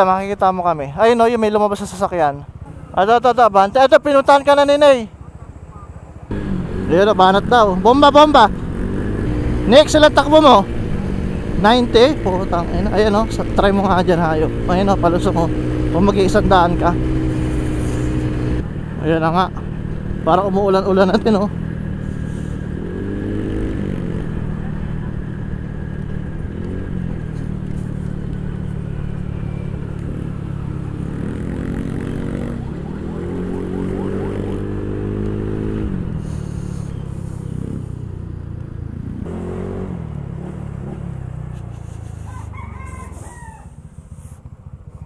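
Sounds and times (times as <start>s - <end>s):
scooter engine revving: 6.3s - 42.3s.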